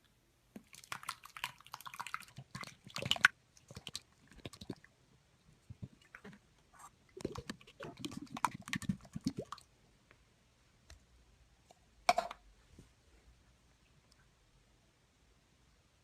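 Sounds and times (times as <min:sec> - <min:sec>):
slime squelching: 0:00.6 - 0:04.8, 0:05.8 - 0:09.6.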